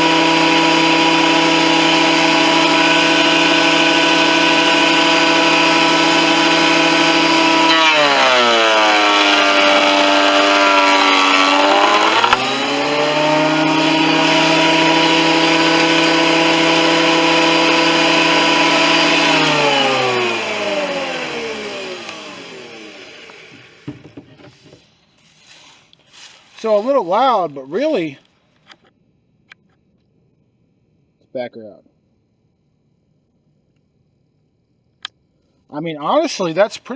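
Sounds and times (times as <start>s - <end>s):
planer motor whining: 0.0s - 24.8s.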